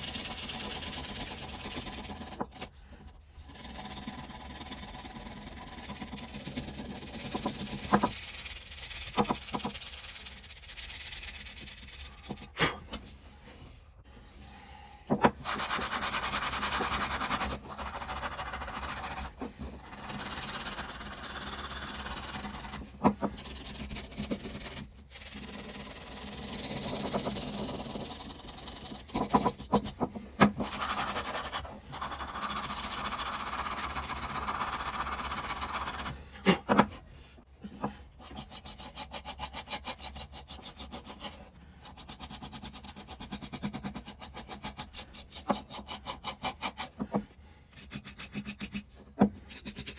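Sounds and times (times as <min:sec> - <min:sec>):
saw rubbing and scraping strokes: 0:15.2 - 0:36.2.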